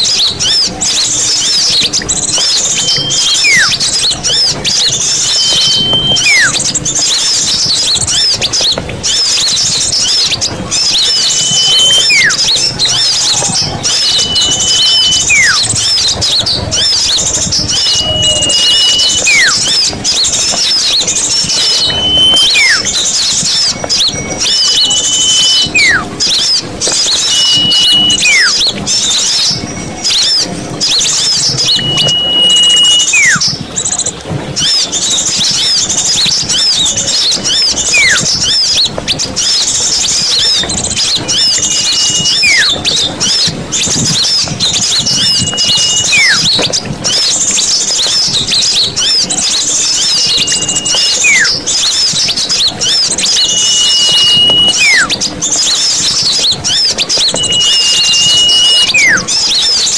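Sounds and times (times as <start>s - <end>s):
bird whistle: 0.0s - 59.9s
small birds chirping: 0.0s - 59.9s.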